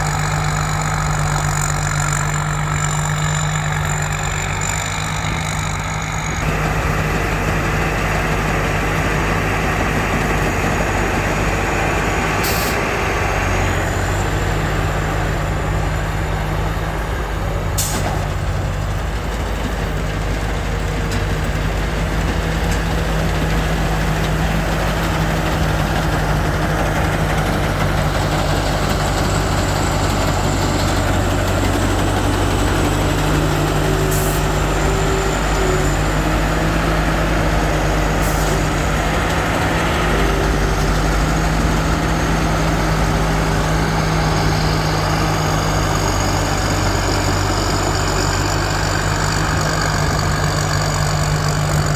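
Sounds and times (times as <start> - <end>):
combine harvester running: 0.0 - 51.9.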